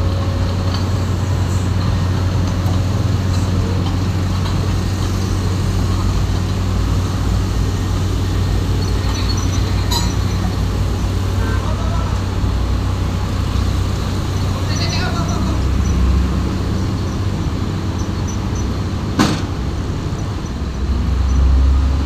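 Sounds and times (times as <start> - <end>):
diesel engine droning: 0.0 - 22.0.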